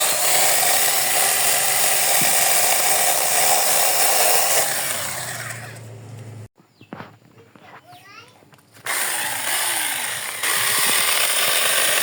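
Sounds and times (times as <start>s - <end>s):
chainsaw running: 0.0s - 5.9s, 8.8s - 12.0s.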